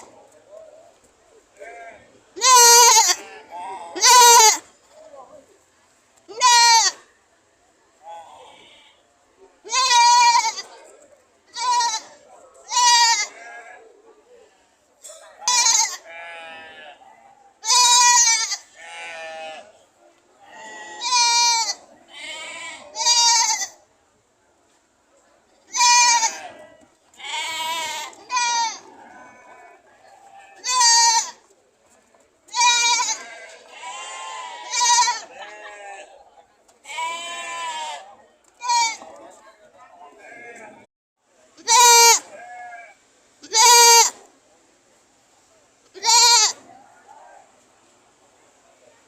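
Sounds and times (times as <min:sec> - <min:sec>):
goats bleating: 0:01.6 - 0:04.6, 0:06.3 - 0:07.0, 0:09.7 - 0:10.7, 0:11.5 - 0:13.8, 0:15.4 - 0:17.0, 0:17.6 - 0:19.7, 0:20.5 - 0:23.8, 0:25.7 - 0:31.4, 0:32.5 - 0:36.1, 0:36.9 - 0:39.1, 0:41.6 - 0:44.2, 0:46.0 - 0:46.6.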